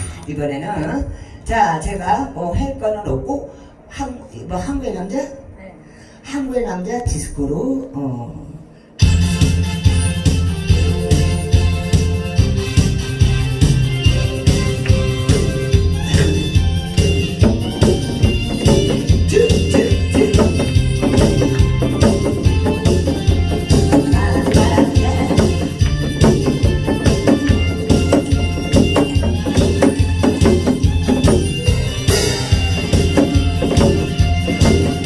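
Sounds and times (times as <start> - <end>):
disco backing music with beat: 9.0 - 35.0.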